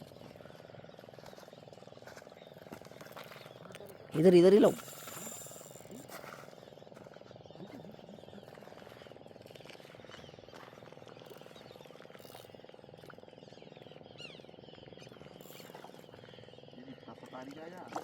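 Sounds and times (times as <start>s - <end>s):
frogs trilling: 3.6s - 6.7s, 11.2s - 18.0s.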